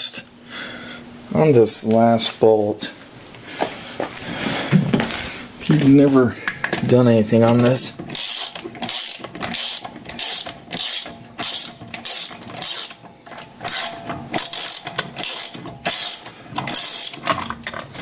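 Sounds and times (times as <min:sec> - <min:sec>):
ratchet wrench clicking: 0:08.1 - 0:13.0, 0:13.6 - 0:17.4.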